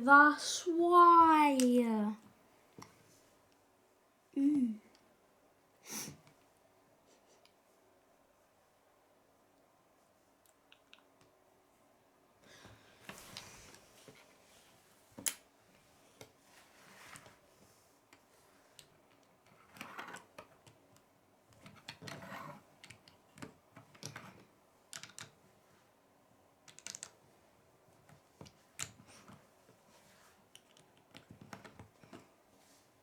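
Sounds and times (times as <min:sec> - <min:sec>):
plastic bricks clicking: 0:26.7 - 0:27.2.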